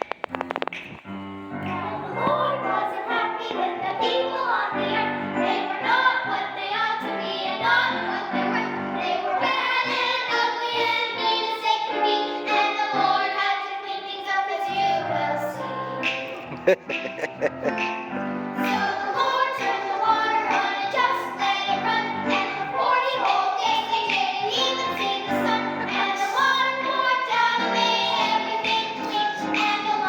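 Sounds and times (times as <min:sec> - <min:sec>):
quick clicks: 0:00.0 - 0:01.1
instrumental accompaniment: 0:15.5 - 0:20.6
children's choir singing: 0:17.7 - 0:30.0.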